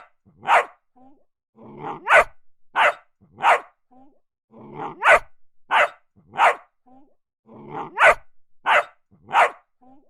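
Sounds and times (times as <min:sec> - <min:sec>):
dog barking: 0:00.0 - 0:00.8, 0:02.0 - 0:03.8, 0:04.9 - 0:06.7, 0:07.9 - 0:09.7
dog growling: 0:01.6 - 0:02.1, 0:04.5 - 0:05.0, 0:07.5 - 0:08.1.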